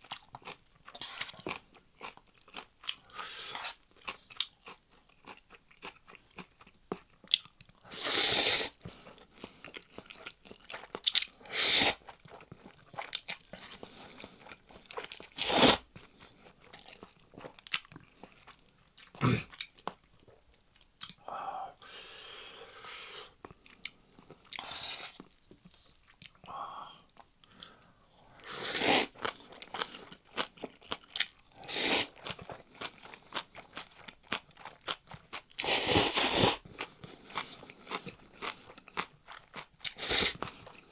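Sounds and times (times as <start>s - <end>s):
person chewing noodles: 0.0s - 40.9s.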